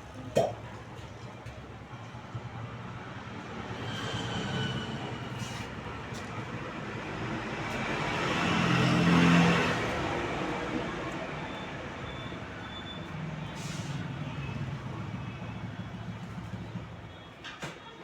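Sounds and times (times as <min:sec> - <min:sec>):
vehicle passing on road: 0:02.6 - 0:17.0.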